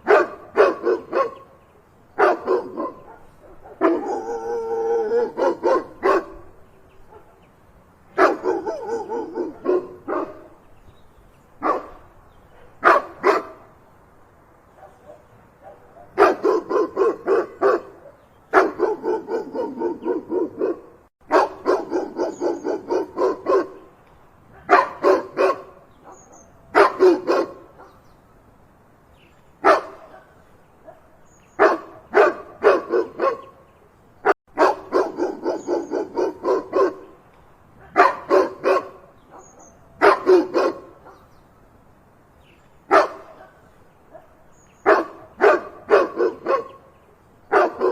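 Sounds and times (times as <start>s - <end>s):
dog barking: 0.0s - 1.5s, 2.2s - 7.4s, 8.2s - 10.5s, 11.6s - 13.6s, 14.7s - 23.9s, 24.5s - 28.0s, 29.6s - 33.6s, 34.2s - 37.2s, 37.8s - 41.3s, 42.9s - 46.8s, 47.5s - 47.9s.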